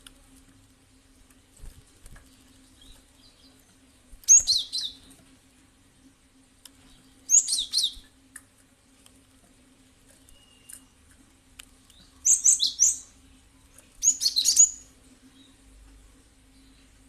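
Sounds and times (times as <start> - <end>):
bird calling in rapid chirps: 4.3 - 5.0, 7.3 - 8.0, 14.0 - 14.9.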